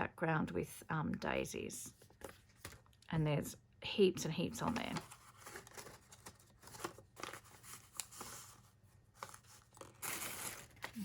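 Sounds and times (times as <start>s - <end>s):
paper packaging rustling: 4.6s - 11.0s.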